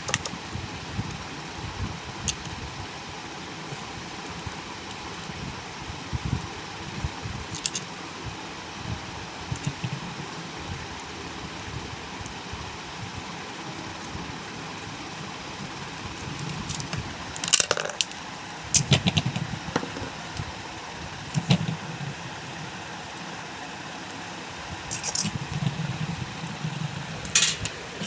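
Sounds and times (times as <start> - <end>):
low rubbing and handling noise: 18.7 - 23.3, 24.7 - 28.0
metallic clinks of tools and parts: 27.3 - 27.8.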